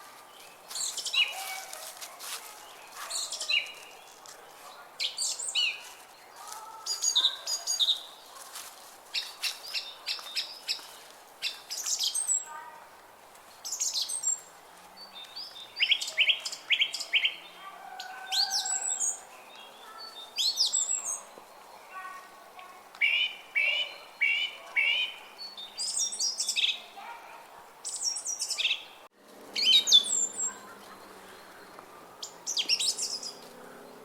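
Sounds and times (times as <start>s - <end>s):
faint outdoor air hiss: 0.0s - 17.7s
songbirds singing and chirping: 0.0s - 34.0s.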